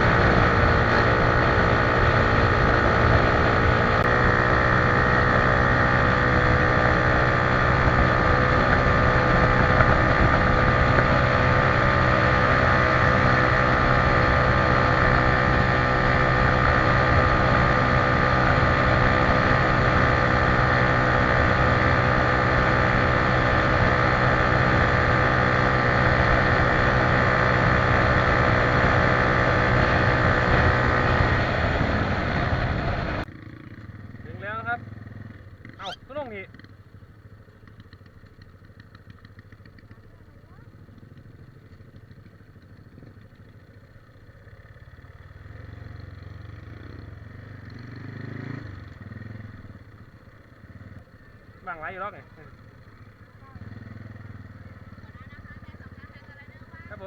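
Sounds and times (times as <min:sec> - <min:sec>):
motorcycle engine running: 0:00.0 - 0:57.0
wind buffeting microphone: 0:07.9 - 0:11.9.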